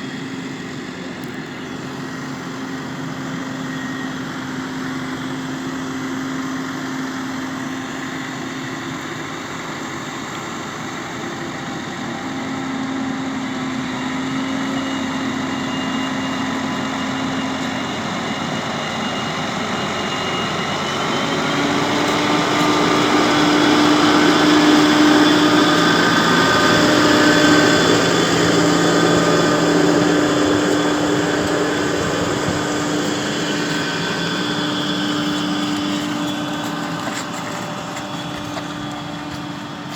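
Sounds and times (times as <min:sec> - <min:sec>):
tractor engine running: 0:13.4 - 0:39.9.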